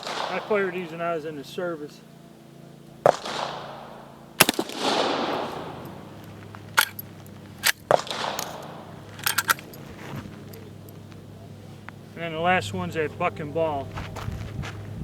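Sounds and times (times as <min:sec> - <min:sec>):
shotgun blasts with echo: 0:00.0 - 0:01.4, 0:03.0 - 0:07.0, 0:07.6 - 0:09.6
shotgun lever action clacking: 0:05.4 - 0:09.8.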